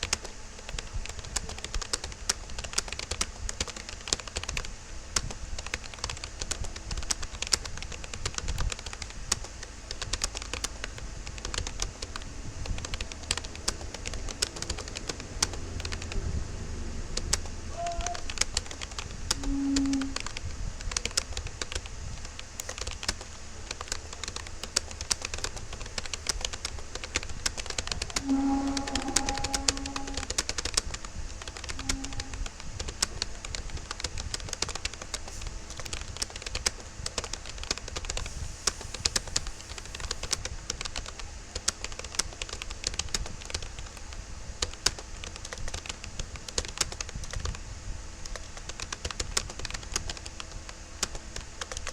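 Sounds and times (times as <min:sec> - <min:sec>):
fast typing on keyboard: 0:00.0 - 0:16.4, 0:17.2 - 0:47.6, 0:48.2 - 0:51.9
faint tones: 0:10.9 - 0:21.3, 0:27.5 - 0:33.6.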